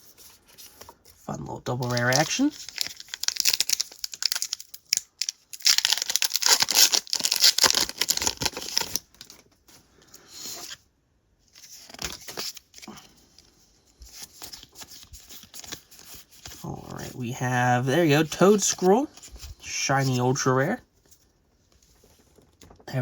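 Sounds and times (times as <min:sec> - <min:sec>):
trading cards rustling: 0:00.0 - 0:09.4, 0:11.6 - 0:17.2, 0:17.9 - 0:20.5
foil pack tearing open: 0:01.8 - 0:09.4.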